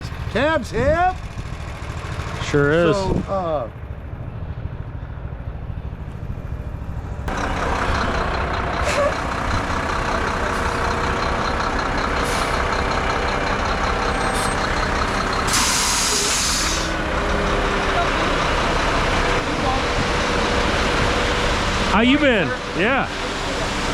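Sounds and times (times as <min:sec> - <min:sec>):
diesel truck engine running: 0:00.0 - 0:23.9
air brakes hissing: 0:08.8 - 0:09.3, 0:12.2 - 0:12.7, 0:14.1 - 0:17.0.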